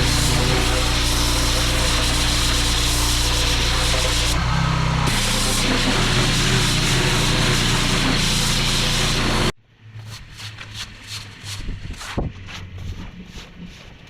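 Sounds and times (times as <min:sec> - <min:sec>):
pressure washer running: 0:00.0 - 0:09.6.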